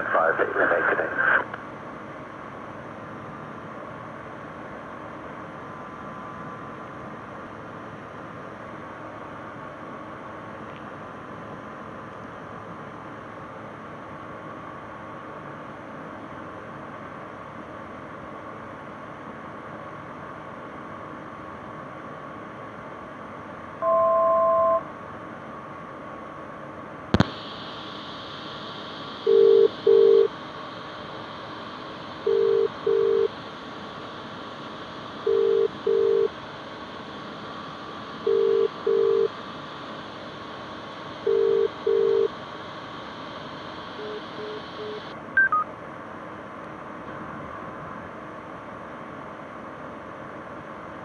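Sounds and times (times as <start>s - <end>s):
steady line hiss: 0.0s - 23.6s, 25.0s - 51.0s
two-tone beep: 23.8s - 24.8s, 35.3s - 36.3s, 41.3s - 42.3s, 44.0s - 45.7s
short beeps: 23.8s - 24.9s, 29.2s - 30.3s, 32.2s - 33.3s, 35.2s - 36.3s, 38.2s - 39.3s, 41.2s - 42.3s, 44.0s - 45.7s
telephone ringing tone: 23.8s - 24.9s, 28.5s - 33.8s, 34.8s - 36.4s, 38.2s - 39.4s, 41.2s - 45.6s
cabin drone: 27.1s - 45.2s
line click: 27.2s - 27.4s.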